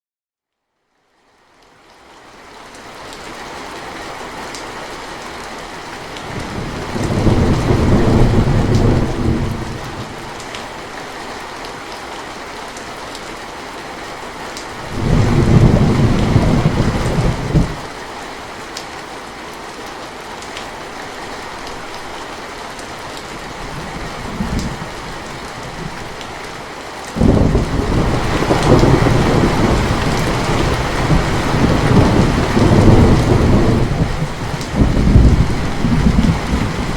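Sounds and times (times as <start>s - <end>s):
steady rain falling: 0.8s - 36.9s
thunder rumbles: 6.2s - 10.5s, 14.8s - 17.9s, 23.4s - 26.2s, 27.2s - 36.9s.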